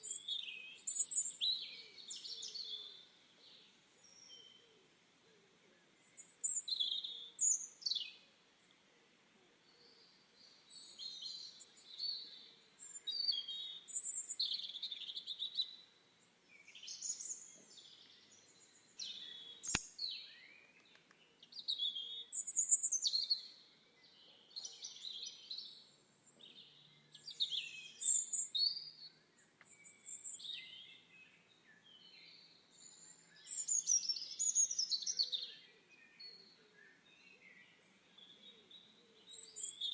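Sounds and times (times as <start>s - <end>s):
songbirds chirping and trilling: 0.0s - 39.9s
sharp click: 19.6s - 20.0s.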